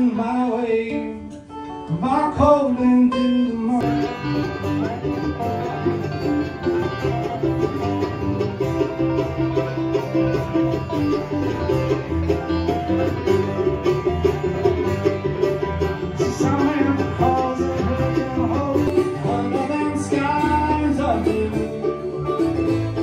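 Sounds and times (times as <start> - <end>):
country band playing instrumental: 0.0 - 23.0.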